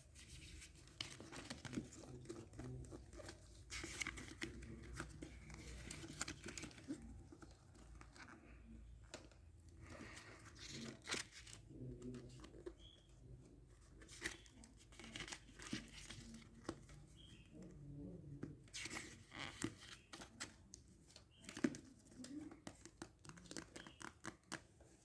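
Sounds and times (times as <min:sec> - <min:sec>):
small clicks and taps: 0:19.6 - 0:24.6.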